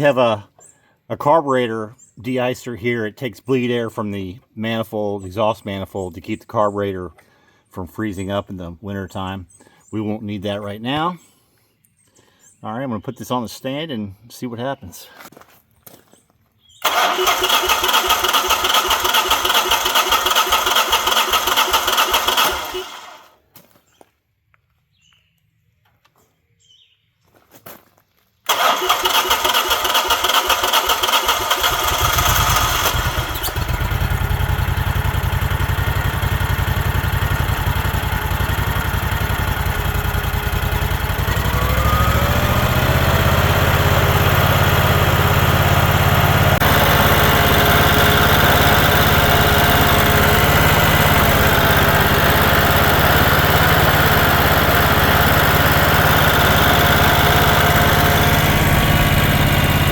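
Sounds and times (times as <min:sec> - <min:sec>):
generator engine cranking and running: 0:16.8 - 0:23.4, 0:28.5 - 0:59.9.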